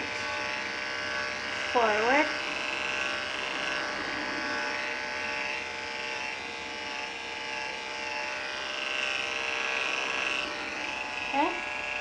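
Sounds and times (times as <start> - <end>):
electric clipper humming: 0.0 - 12.0.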